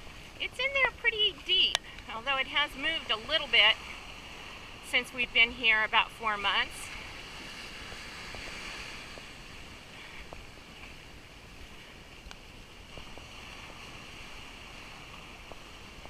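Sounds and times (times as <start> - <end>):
gentle sea wash: 0.0 - 16.0
wind on microphone: 0.0 - 16.0
faint ticks: 12.2 - 12.4.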